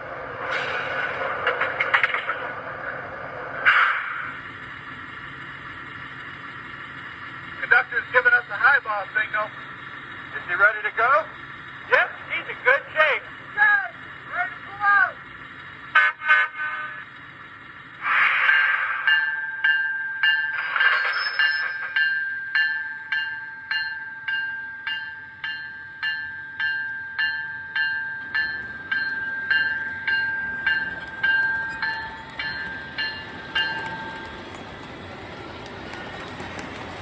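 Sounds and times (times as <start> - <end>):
locomotive bell ringing: 0.4 - 1.9, 18.8 - 37.0.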